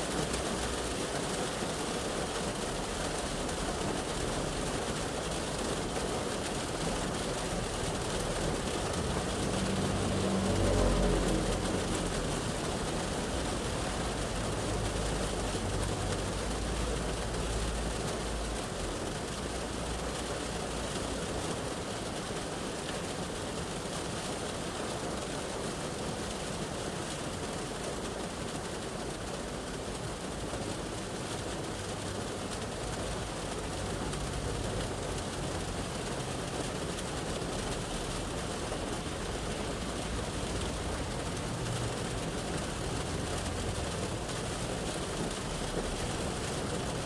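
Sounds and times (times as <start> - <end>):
rain drumming on car roof: 0.0 - 47.0
passing road traffic rumble: 6.8 - 18.6, 30.3 - 47.0.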